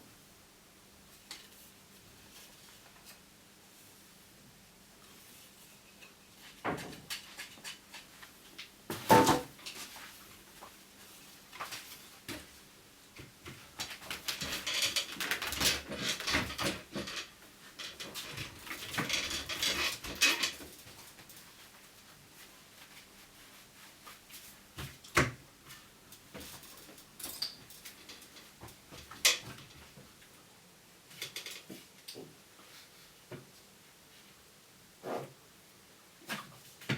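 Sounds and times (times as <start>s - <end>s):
rustling handling noise: 1.0s - 30.3s.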